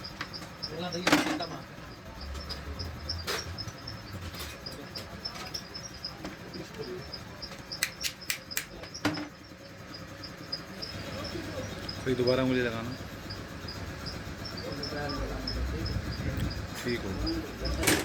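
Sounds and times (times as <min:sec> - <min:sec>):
insects chirping: 0:00.0 - 0:18.0
sharp clicks of metal parts: 0:07.8 - 0:08.9, 0:17.7 - 0:18.0.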